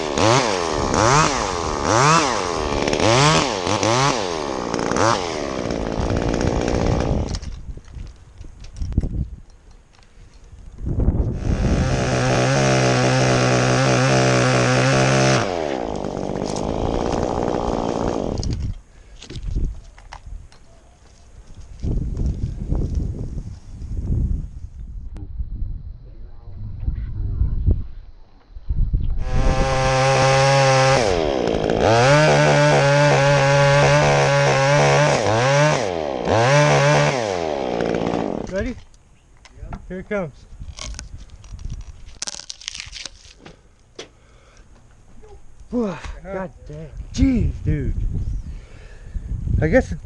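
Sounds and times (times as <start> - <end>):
chainsaw running: 0.0 - 7.6, 11.3 - 18.8, 29.2 - 38.8.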